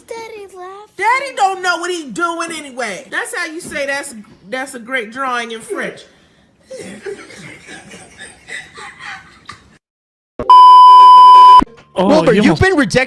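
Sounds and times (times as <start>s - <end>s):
loud high beep: 10.4s - 11.6s.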